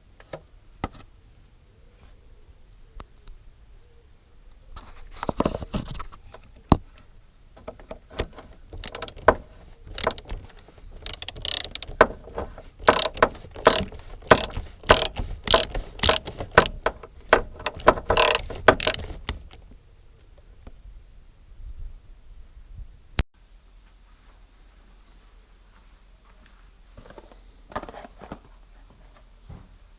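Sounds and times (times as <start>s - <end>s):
metallic clicks and rasps: 7.6s - 19.6s
ratchet clicking: 8.8s - 19.5s.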